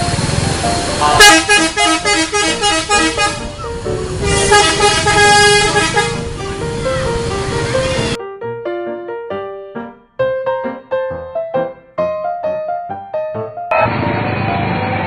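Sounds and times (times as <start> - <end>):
bus and street rumble: 0.0 - 8.2, 13.7 - 15.0
musical air horn tune: 0.9 - 8.2.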